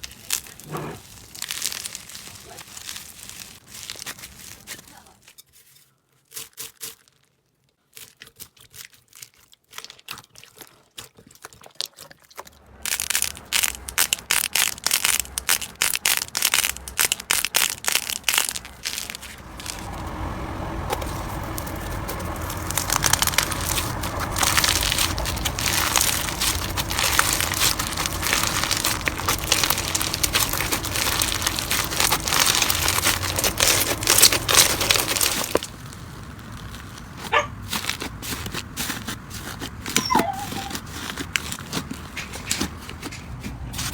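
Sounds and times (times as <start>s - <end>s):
slime crackling and popping: 0.0s - 5.1s, 7.9s - 43.0s.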